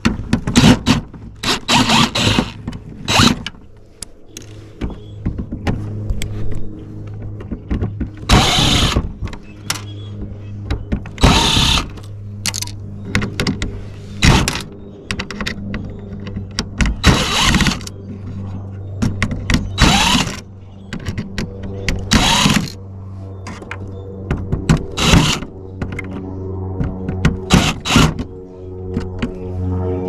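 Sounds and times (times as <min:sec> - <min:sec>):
steady low hum: 0:00.0 - 0:30.0
power drill whirring: 0:00.6 - 0:03.5, 0:08.3 - 0:09.0, 0:11.2 - 0:12.0, 0:17.0 - 0:17.9, 0:19.8 - 0:20.4, 0:22.1 - 0:22.8, 0:25.0 - 0:25.5, 0:27.5 - 0:28.2.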